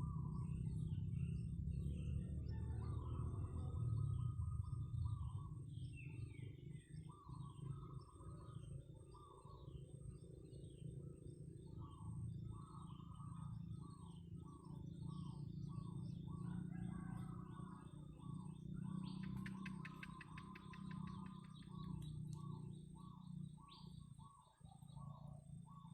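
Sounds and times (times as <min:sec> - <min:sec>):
low background rumble: 0:00.0 - 0:25.9
bird high chirps: 0:18.4 - 0:25.9.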